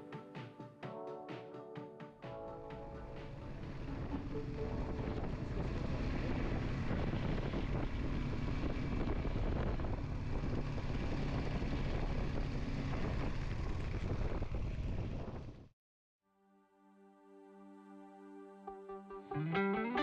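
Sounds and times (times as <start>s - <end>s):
motorcycle engine hum: 2.6s - 15.7s
wind rush on microphone: 4.0s - 15.7s.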